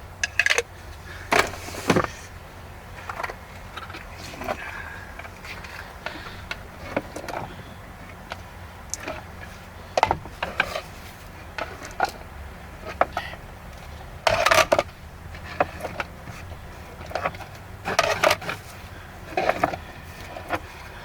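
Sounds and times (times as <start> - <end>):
clicks and knocks of handling: 3.0 - 4.6, 12.9 - 21.0
rattling clatter: 14.2 - 21.0.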